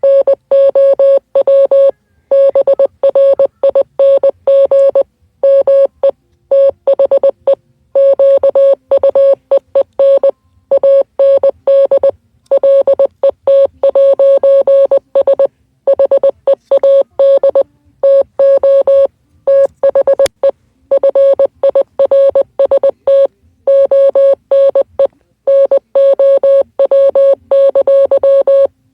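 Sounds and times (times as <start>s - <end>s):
morse code beeps: 0.0s - 28.7s.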